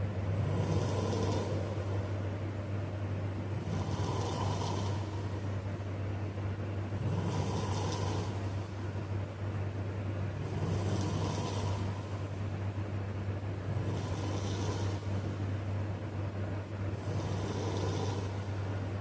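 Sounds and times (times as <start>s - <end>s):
steady low drone: 0.0s - 19.0s
person snoring: 0.3s - 1.8s, 3.5s - 5.3s, 7.0s - 8.4s, 10.4s - 12.0s, 13.7s - 15.1s, 17.0s - 18.6s.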